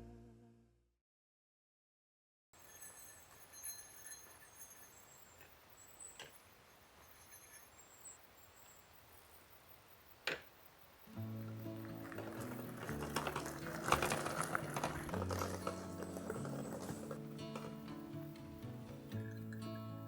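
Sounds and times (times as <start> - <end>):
background music: 11.1 - 20.0.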